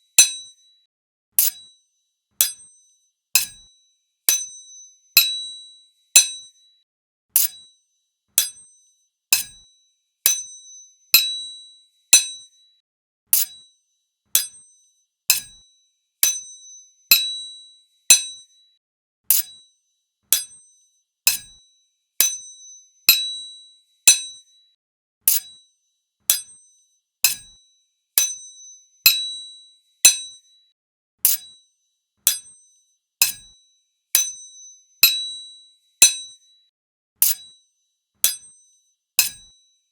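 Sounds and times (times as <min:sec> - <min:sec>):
sword blades clashing: 0:39.2 - 0:39.5.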